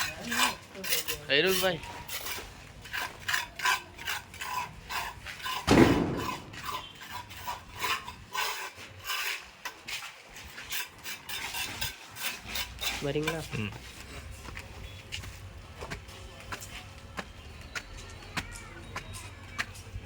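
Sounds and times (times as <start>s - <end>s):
gritty scraping strokes: 0.0s - 14.3s
deep thump: 5.7s - 6.6s.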